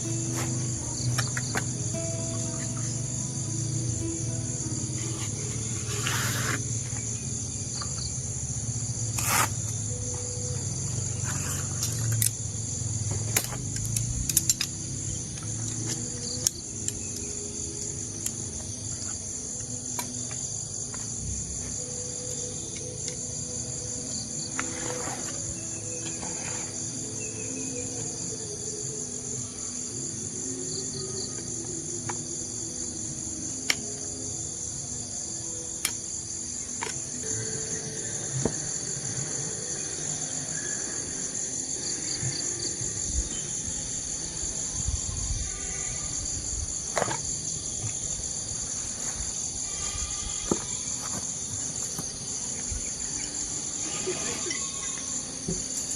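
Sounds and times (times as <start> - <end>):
insects chirring: 0.0 - 55.9.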